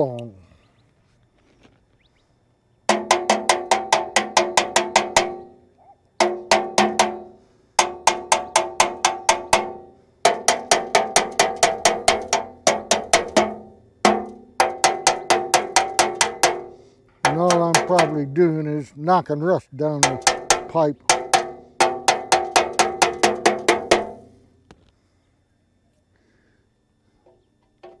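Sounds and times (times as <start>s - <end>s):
rapid tapping on ringing metal cap: 2.9s - 5.6s, 6.2s - 18.4s, 20.0s - 24.4s.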